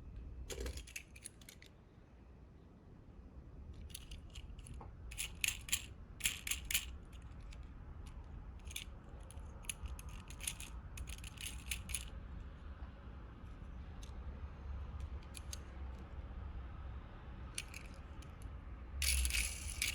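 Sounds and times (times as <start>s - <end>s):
toy cars clinking together: 5.1s - 6.9s, 9.6s - 12.1s, 19.0s - 19.9s.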